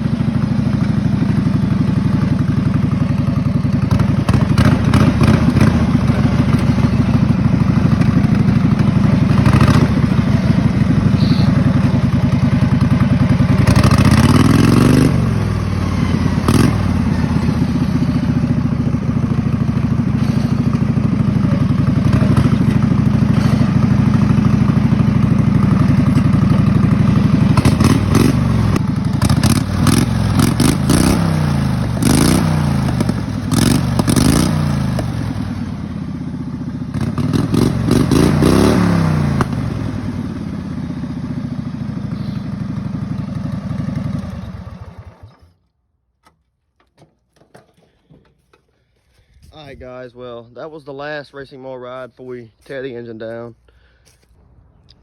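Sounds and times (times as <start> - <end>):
lawn mower engine revving: 0.0 - 45.8
mower clattering knocks: 46.2 - 49.0.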